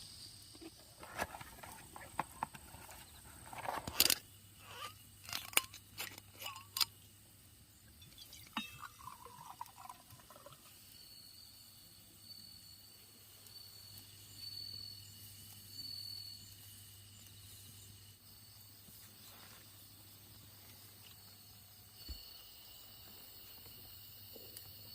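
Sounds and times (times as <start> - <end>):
insects trilling: 0.0 - 24.9
drink poured into a glass: 8.1 - 10.8.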